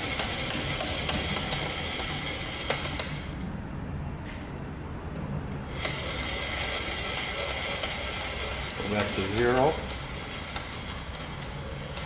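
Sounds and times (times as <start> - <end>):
milling machine whine: 5.6 - 12.0.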